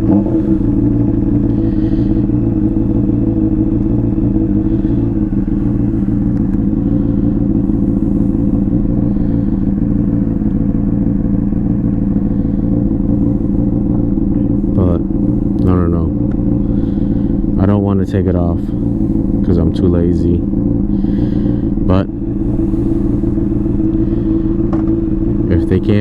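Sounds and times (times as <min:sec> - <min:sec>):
motorcycle engine idling: 0:00.0 - 0:26.0.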